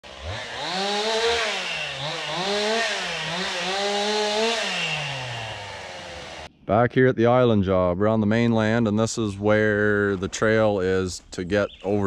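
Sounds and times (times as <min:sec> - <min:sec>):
chainsaw engine revving: 0:00.0 - 0:06.5.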